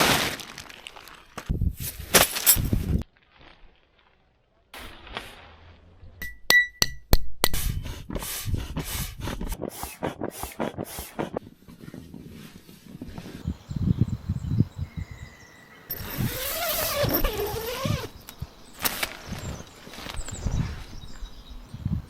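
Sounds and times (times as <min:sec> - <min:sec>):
knocks scrapes and clinks: 0:02.1 - 0:02.8, 0:15.9 - 0:18.0.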